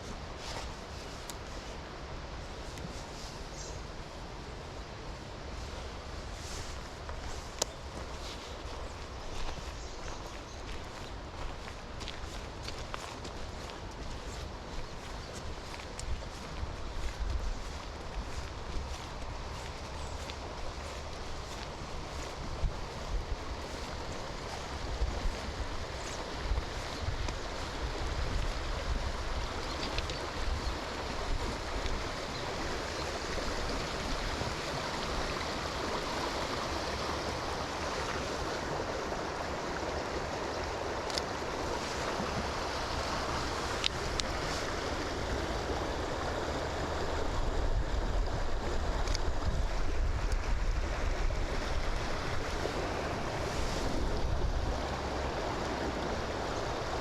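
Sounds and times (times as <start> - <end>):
rain and wind through trees: 0.0 - 57.0
wind rumbling on microphone: 0.0 - 57.0.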